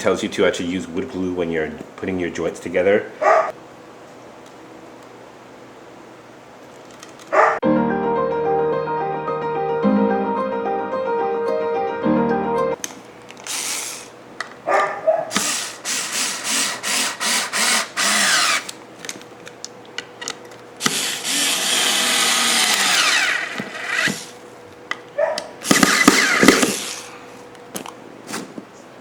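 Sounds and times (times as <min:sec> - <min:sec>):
power drill driving screws: 0:13.5 - 0:14.1, 0:15.3 - 0:18.8, 0:20.8 - 0:24.3, 0:25.6 - 0:27.1.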